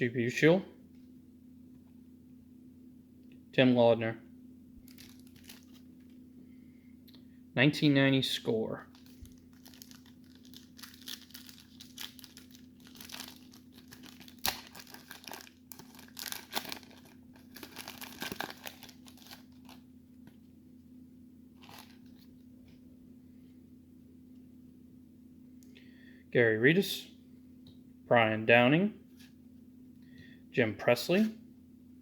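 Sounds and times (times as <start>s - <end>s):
faint steady hum: 0.0s - 32.0s
wrapper crinkling and tearing: 4.8s - 6.2s, 8.9s - 19.8s, 21.6s - 22.3s.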